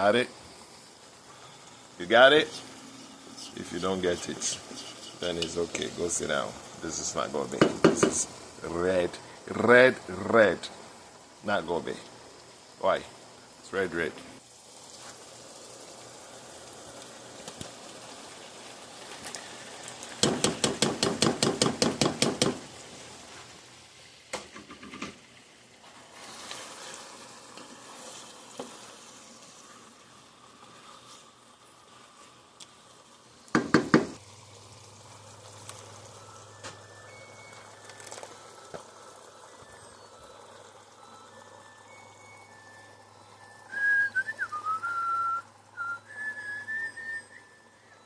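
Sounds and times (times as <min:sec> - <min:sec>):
food sizzling in a pot: 0:00.0 - 0:48.0
utensil knocking against pot: 0:07.6 - 0:08.2, 0:20.2 - 0:22.6, 0:33.5 - 0:34.2.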